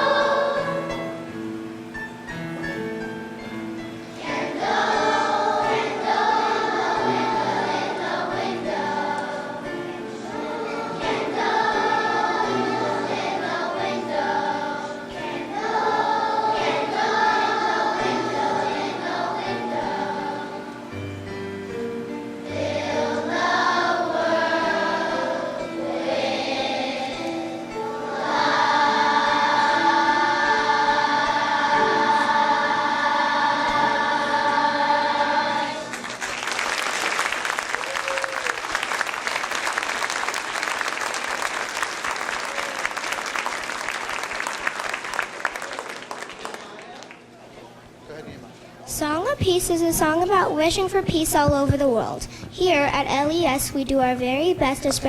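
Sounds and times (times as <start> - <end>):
children's choir singing: 0.0 - 1.3, 4.1 - 21.1, 22.0 - 37.4.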